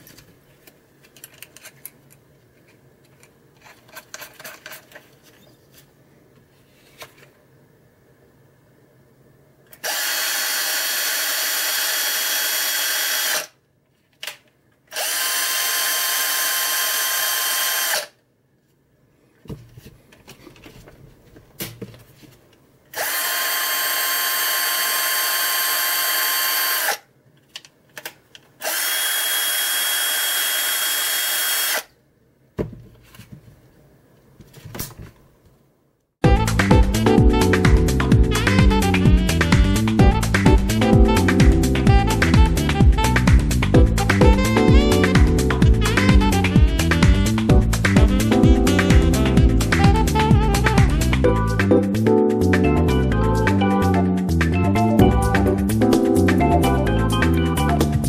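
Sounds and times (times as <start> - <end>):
electric drill motor whine: 9.8 - 13.5, 15.0 - 18.1, 23.0 - 27.0, 28.6 - 31.9.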